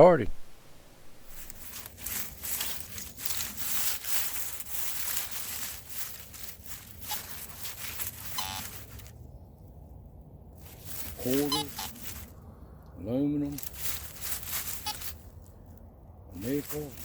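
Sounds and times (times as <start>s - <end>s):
dry leaves rustling and crunching: 0.7s - 12.8s, 13.4s - 17.0s.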